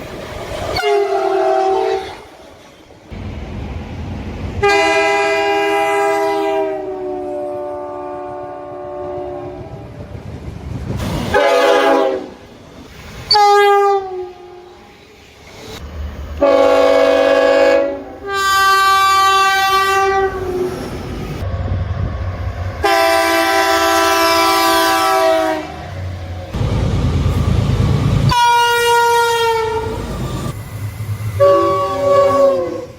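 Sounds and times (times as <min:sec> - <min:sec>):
passing train rumble: 0:00.0 - 0:32.9
train air horns: 0:00.7 - 0:02.3, 0:04.6 - 0:09.7, 0:11.2 - 0:12.5, 0:13.3 - 0:14.8, 0:16.4 - 0:20.7, 0:22.8 - 0:26.0, 0:28.3 - 0:30.0, 0:31.3 - 0:32.9.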